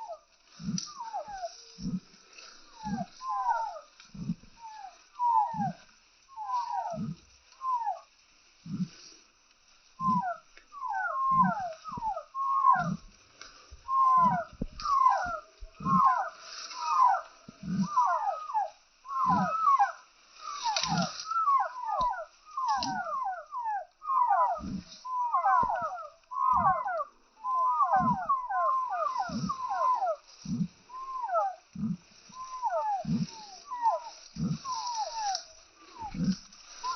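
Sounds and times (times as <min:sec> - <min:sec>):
chickens calling: 0:00.0 - 0:08.0, 0:10.0 - 0:36.9.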